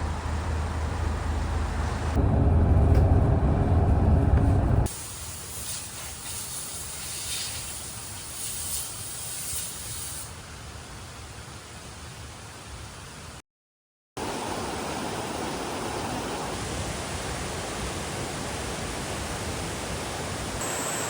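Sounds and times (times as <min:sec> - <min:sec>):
loud low rumble: 0:00.0 - 0:04.9
mountain stream rushing: 0:14.2 - 0:21.0.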